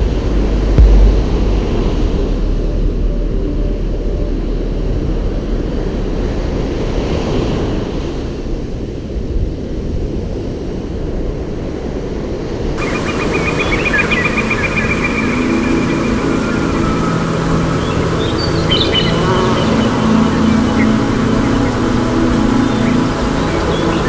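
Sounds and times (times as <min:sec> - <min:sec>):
wind buffeting microphone: 0:00.0 - 0:24.0
surf washing on shore: 0:06.2 - 0:24.0
faint high-pitched tones: 0:12.8 - 0:24.0.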